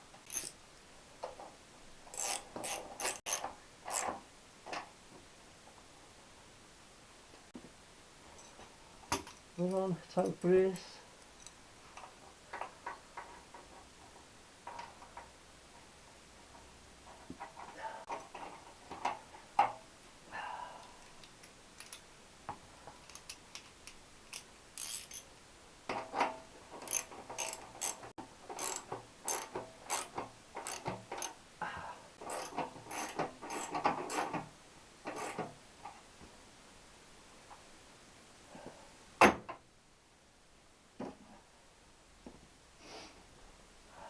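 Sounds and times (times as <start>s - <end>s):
tools and metal parts clinking: 0.2s - 0.6s, 2.1s - 4.1s, 21.2s - 22.0s, 23.0s - 25.3s, 25.9s - 31.4s, 32.2s - 34.4s
ratchet spanner clicking: 2.1s - 4.1s, 23.1s - 25.2s, 26.8s - 31.4s.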